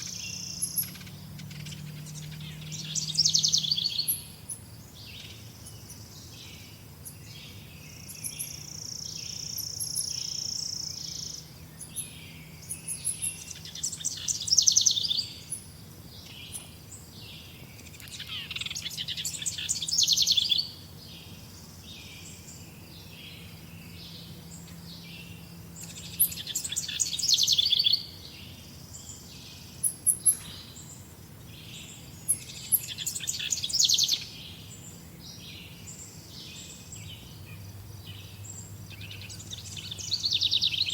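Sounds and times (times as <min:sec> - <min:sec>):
songbirds chirping: 0:00.0 - 0:40.9
loud trilled bird phrases: 0:07.0 - 0:15.7, 0:17.4 - 0:20.8, 0:25.2 - 0:28.2, 0:31.8 - 0:34.9, 0:38.2 - 0:40.9.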